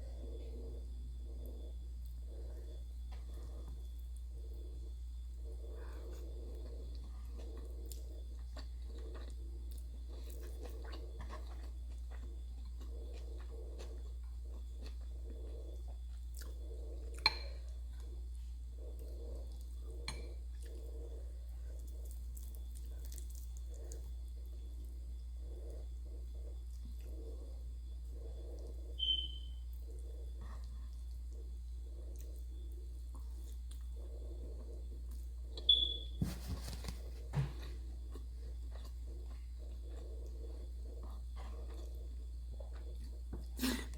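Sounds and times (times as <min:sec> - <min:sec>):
steady low hum: 0:00.0 - 0:43.9
chewing food: 0:00.2 - 0:43.9
high beep: 0:29.0 - 0:29.5, 0:35.7 - 0:36.2.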